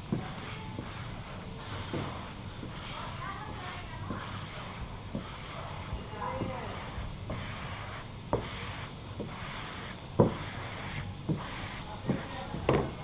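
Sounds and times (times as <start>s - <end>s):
squeegee rubbing swishes: 0.0s - 13.0s.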